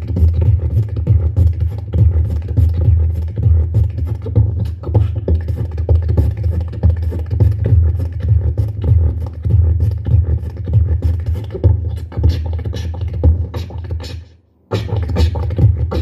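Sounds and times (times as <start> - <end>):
deep bass hum: 0.0 - 12.2
beatboxing mouth percussion: 0.0 - 16.0.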